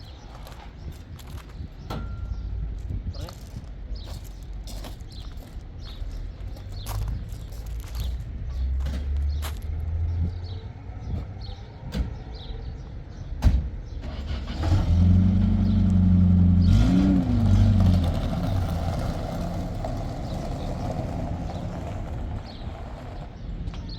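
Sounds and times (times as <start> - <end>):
vehicle engine running: 15.2 - 23.4.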